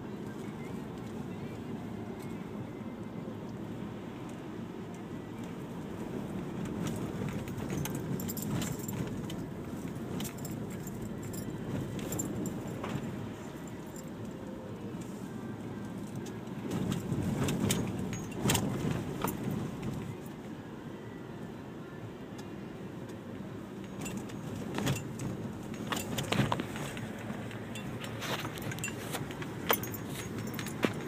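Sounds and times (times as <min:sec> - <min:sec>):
vehicle engine rumble: 0:00.0 - 0:31.0
metallic jingling: 0:24.0 - 0:31.0.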